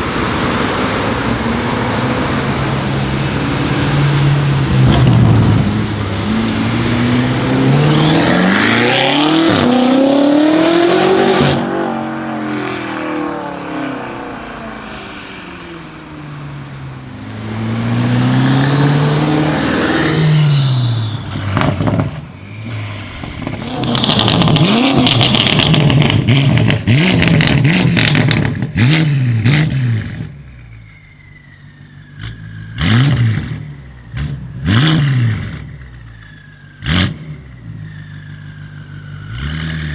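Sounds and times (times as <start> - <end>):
car engine accelerating: 0.0 - 39.9
exhaust crackles and pops: 21.2 - 30.3.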